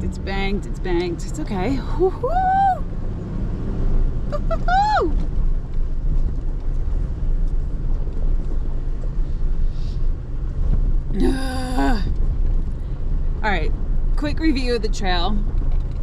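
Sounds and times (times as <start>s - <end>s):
engine and tyres rumbling: 0.0s - 16.0s
person vocal sound: 11.1s - 12.1s.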